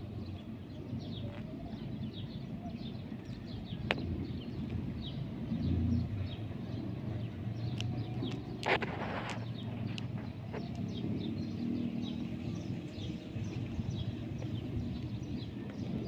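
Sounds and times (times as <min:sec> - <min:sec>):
small birds chirping: 0:00.0 - 0:16.0
steady low rumble: 0:00.0 - 0:16.0
brief rustle: 0:08.4 - 0:10.8.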